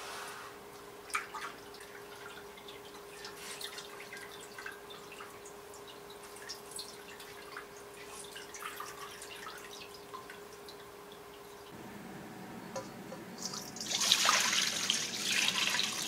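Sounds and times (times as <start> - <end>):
water dripping: 0.7 - 11.8
steady low hum: 11.7 - 13.8.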